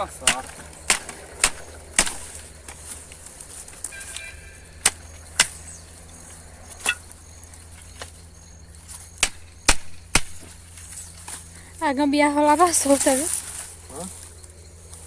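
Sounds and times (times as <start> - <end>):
wood and debris knocking: 8.9 - 10.8.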